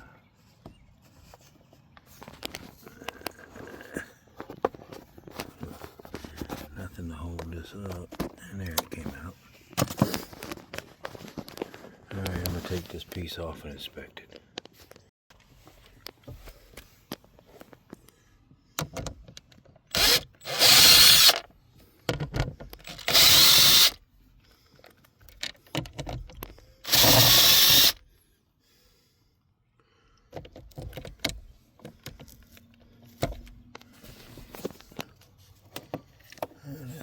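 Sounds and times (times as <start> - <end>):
clicks and handling noises: 0.6 - 18.2, 24.4 - 26.7, 30.3 - 36.6
power drill running: 19.9 - 21.4, 22.8 - 24.0, 26.8 - 28.0.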